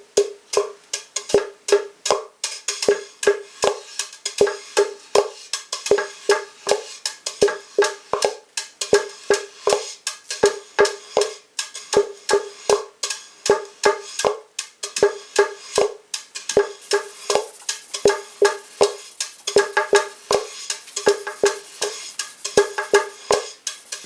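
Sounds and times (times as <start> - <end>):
wooden hand drum tapped: 7.4 - 8.4, 15.8 - 24.0.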